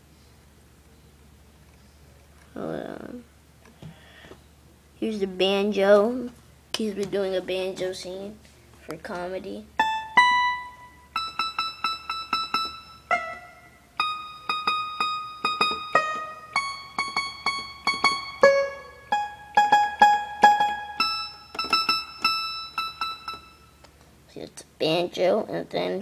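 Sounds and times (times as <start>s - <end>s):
keyboard banjo melody: 9.8s - 23.7s.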